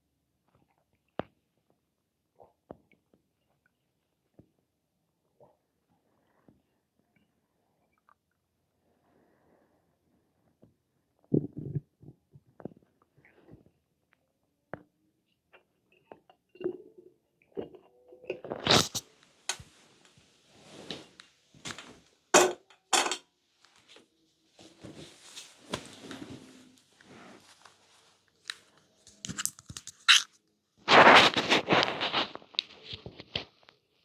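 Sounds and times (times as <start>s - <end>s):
stomach gurgling: 10.5s - 13.8s, 15.5s - 19.1s, 29.1s - 30.3s.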